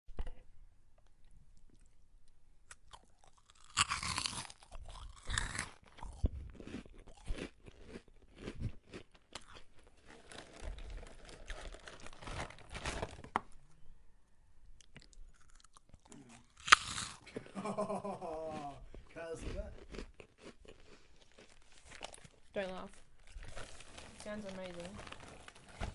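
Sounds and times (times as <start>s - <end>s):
crisp crunching: 3.2s - 13.4s, 14.9s - 17.2s, 19.4s - 25.9s.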